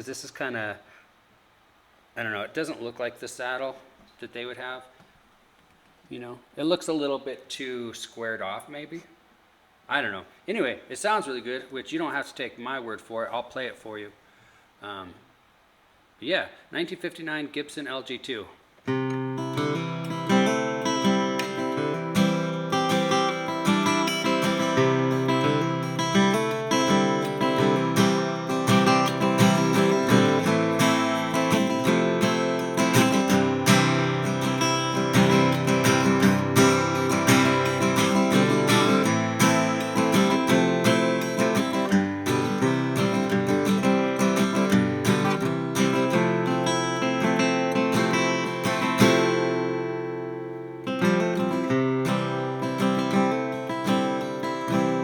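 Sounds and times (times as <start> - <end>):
acoustic guitar strummed and picked: 18.9 - 55.0.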